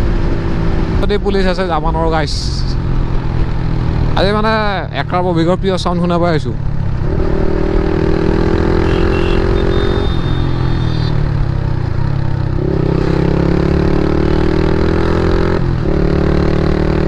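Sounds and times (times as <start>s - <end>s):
motorcycle riding at speed: 2.4s - 5.3s, 6.0s - 17.0s.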